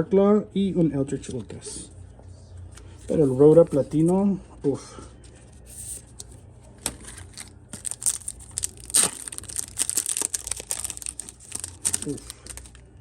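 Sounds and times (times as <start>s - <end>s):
foil wrapper tearing and crinkling: 5.8s - 13.0s.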